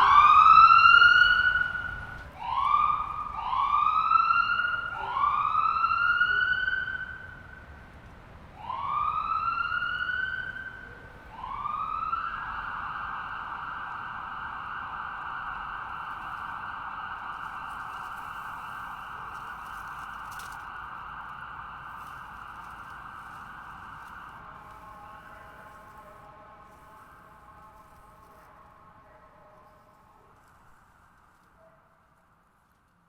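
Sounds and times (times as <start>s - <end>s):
ambulance siren: 0.0s - 31.7s.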